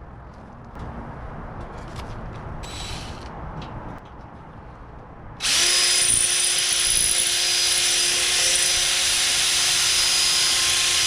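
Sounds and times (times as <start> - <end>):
electric drill drilling: 5.4 - 11.0.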